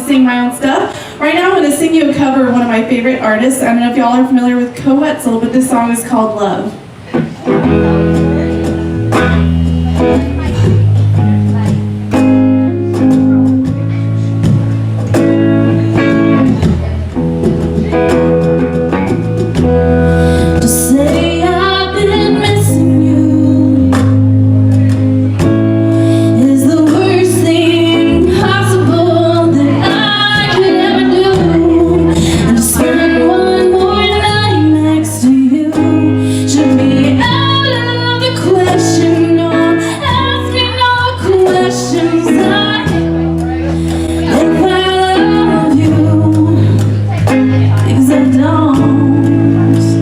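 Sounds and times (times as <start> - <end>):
woman singing country song: 0.0 - 6.8, 19.6 - 50.0
strummed acoustic guitar: 6.9 - 50.0.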